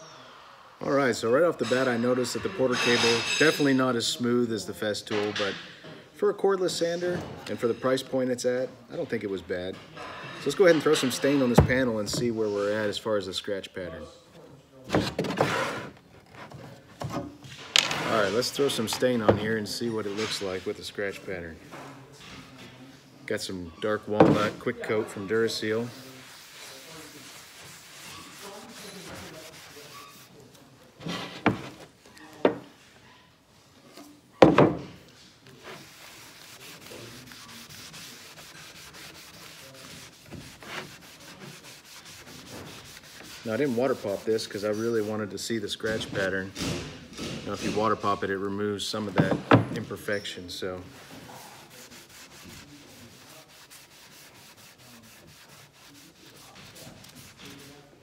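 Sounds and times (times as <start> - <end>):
hand rubbing stain on wood: 23.4 - 30.4, 35.4 - 46.4, 47.5 - 58.0
rag scrubbing wood: 23.8 - 30.4, 35.6 - 46.4, 47.5 - 57.9
sharp knocks and clatters: 34.4 - 35.0, 45.8 - 48.3, 49.1 - 49.9.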